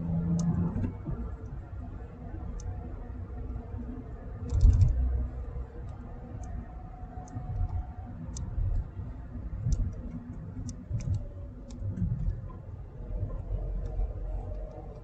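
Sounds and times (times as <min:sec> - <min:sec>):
low uneven rumble: 0:00.0 - 0:15.0
laptop keys or mouse clicking: 0:04.5 - 0:05.1, 0:07.2 - 0:08.9, 0:09.6 - 0:12.4.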